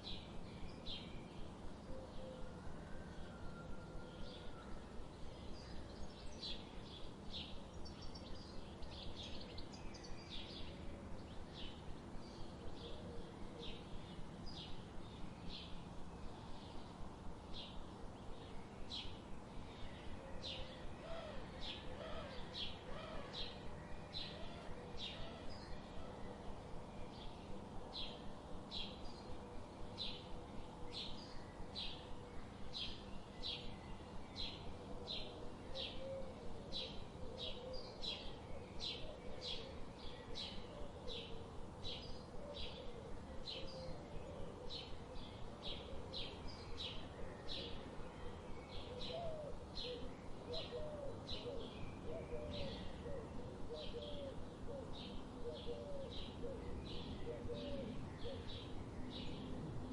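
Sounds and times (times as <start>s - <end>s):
steady background hiss: 0.0s - 59.9s
lower wavering bird calls: 19.0s - 59.9s.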